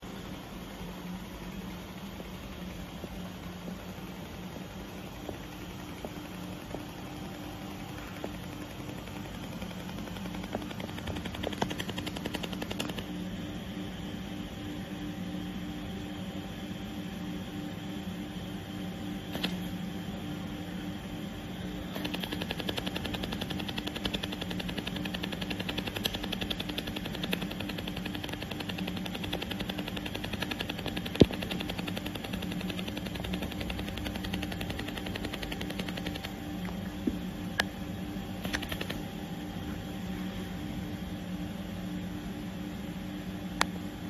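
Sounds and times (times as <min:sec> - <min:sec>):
steady machine hum: 0:00.0 - 0:44.0
laser welder pulsing buzz: 0:00.2 - 0:39.6
sharp clicks: 0:05.3 - 0:13.1, 0:19.3 - 0:19.6, 0:21.9 - 0:36.4, 0:38.4 - 0:39.0.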